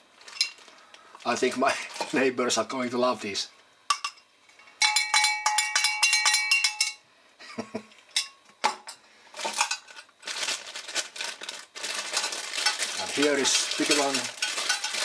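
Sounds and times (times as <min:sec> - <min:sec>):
metal targets clinking and ringing: 0:04.8 - 0:07.0
rustling from handling: 0:09.4 - 0:15.0.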